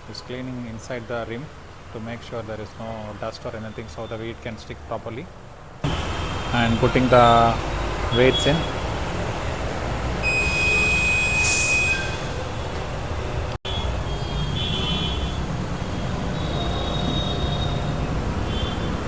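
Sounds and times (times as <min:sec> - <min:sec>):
machinery hum with whines: 0:05.2 - 0:19.0.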